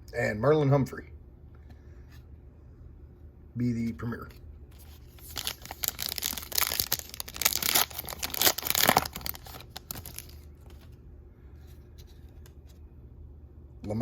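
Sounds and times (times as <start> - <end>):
foil wrapper tearing and crinkling: 5.1 - 10.5.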